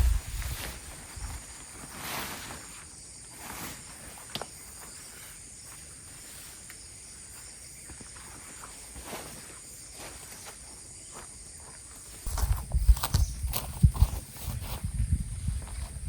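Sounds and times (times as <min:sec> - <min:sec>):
rustling: 0:00.0 - 0:06.8, 0:07.9 - 0:10.8.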